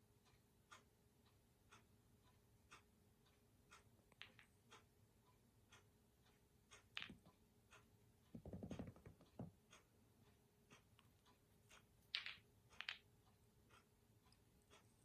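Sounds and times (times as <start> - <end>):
snooker balls clicking: 4.1 - 4.8, 6.8 - 7.4, 8.3 - 9.6, 12.0 - 13.1.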